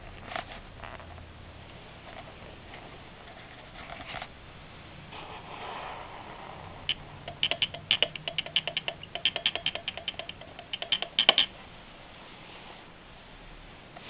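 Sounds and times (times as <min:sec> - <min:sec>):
telegraph clicking morse code: 0:06.9 - 0:11.5.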